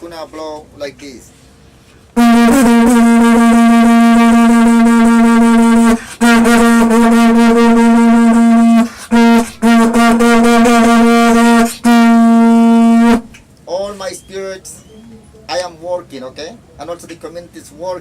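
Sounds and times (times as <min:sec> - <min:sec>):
horn blasts blown by mouth: 0:02.2 - 0:13.4.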